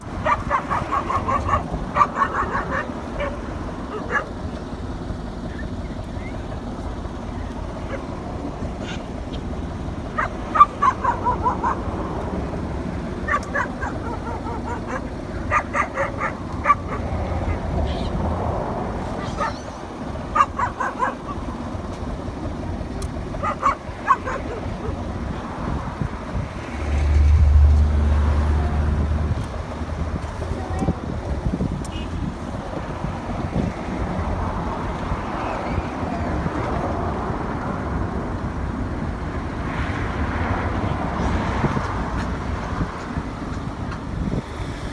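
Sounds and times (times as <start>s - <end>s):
animal yapping: 0.0s - 4.7s, 5.4s - 21.8s, 22.9s - 25.4s
outdoor background noise: 0.0s - 44.9s
wind rumble on microphone: 0.0s - 44.9s.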